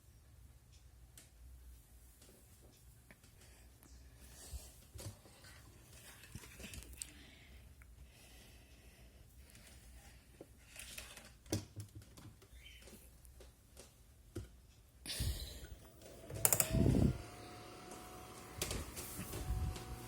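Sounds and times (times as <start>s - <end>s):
fan motor humming: 15.6s - 20.0s.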